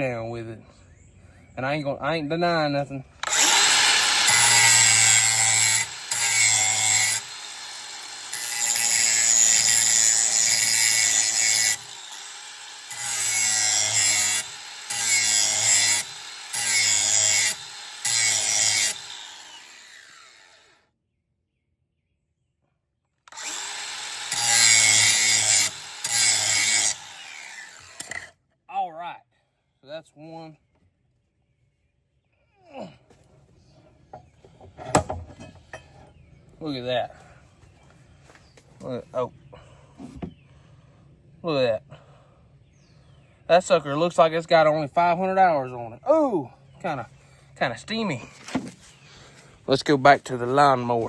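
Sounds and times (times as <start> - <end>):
grinder grinding steel blade: 3.2 - 20.7, 23.3 - 28.3.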